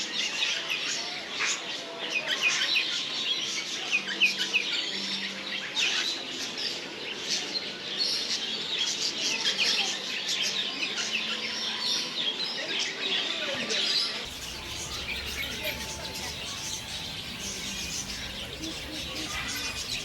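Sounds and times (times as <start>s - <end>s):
parrots chattering: 14.3s - 20.0s.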